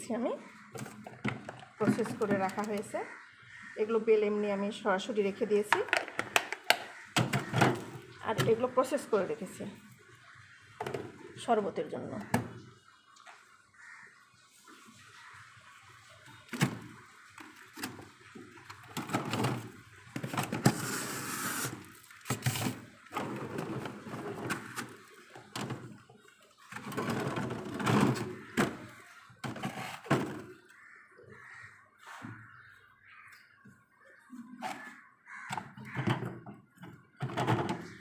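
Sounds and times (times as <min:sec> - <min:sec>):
plastic boxes knocking: 0:05.7 - 0:08.6, 0:35.5 - 0:38.0.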